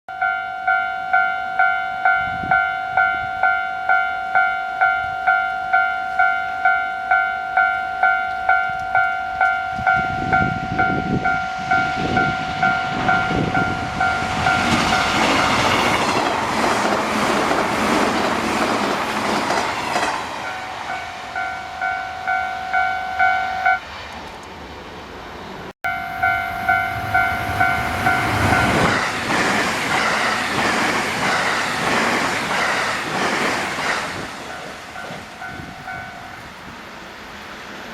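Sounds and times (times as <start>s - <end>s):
level-crossing warning bell: 0.1s - 16.5s, 19.9s - 23.8s, 25.8s - 29.2s, 34.5s - 36.8s
train clattering over rail joints: 12.9s - 21.1s, 28.0s - 36.8s.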